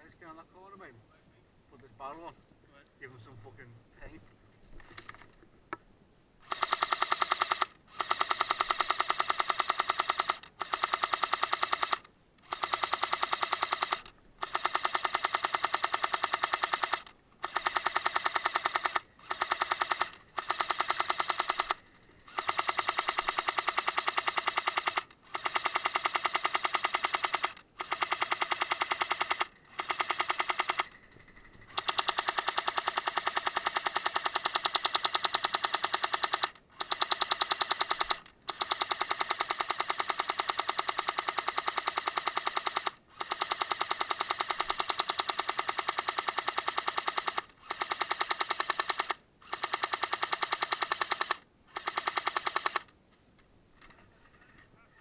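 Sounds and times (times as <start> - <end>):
airsoft gun full-auto bursts: 6.4 - 52.9.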